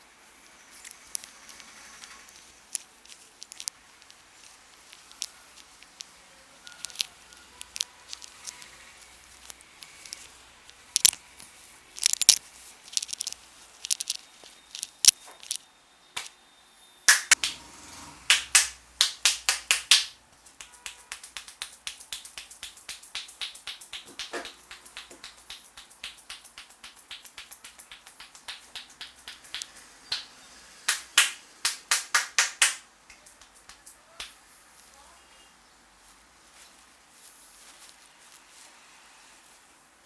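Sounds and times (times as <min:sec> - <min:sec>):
finger snaps: 0:17.1 - 0:17.5, 0:18.3 - 0:30.3
hand slaps and claps: 0:17.1 - 0:17.6, 0:18.3 - 0:34.4.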